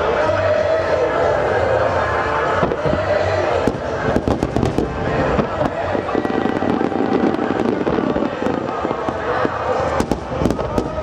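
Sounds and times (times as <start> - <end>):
fireworks rumble and crackle: 0.0 - 11.0.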